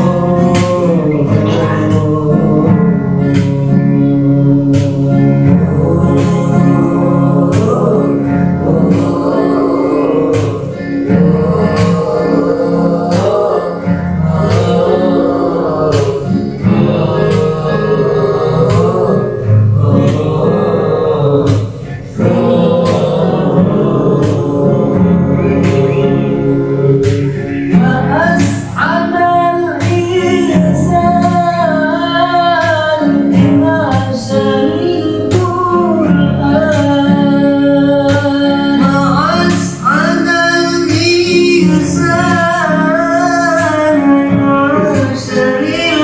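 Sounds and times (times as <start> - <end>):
voices singing: 0.0 - 46.0
darbuka drum strokes: 7.4 - 15.2, 15.8 - 28.8.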